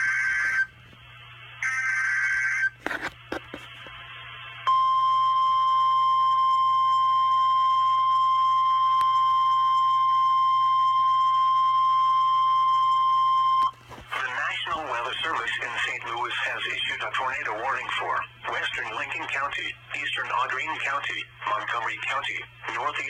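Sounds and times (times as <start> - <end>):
faint radio static: 2.7 - 4.7, 13.7 - 23.0.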